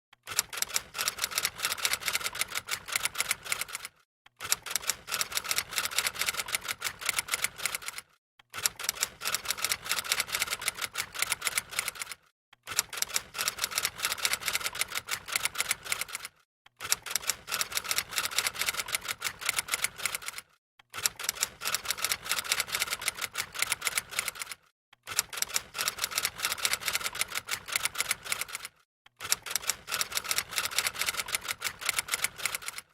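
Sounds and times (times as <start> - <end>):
typewriter keystroke clicks: 0.2 - 3.8, 29.2 - 32.8.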